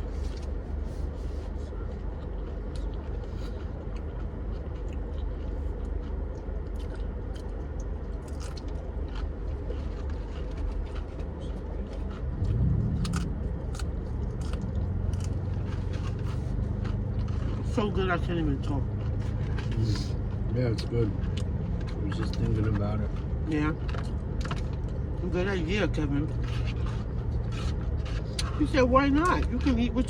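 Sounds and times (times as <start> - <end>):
chewing and crunching: 0.0 - 30.0
steady low hum: 0.0 - 30.0
loud low drone: 11.4 - 24.2.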